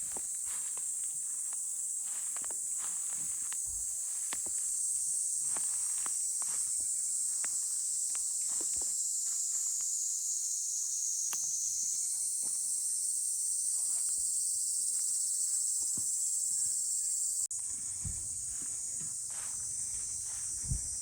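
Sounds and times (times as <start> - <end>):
insect chorus droning: 0.0 - 21.0
low thuds: 17.6 - 21.0.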